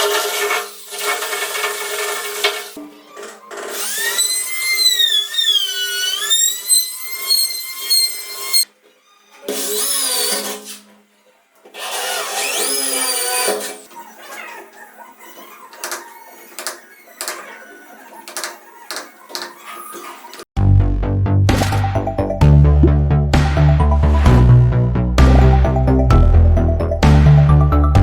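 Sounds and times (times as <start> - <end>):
power drill boring into wood: 3.5 - 8.6, 11.8 - 13.8.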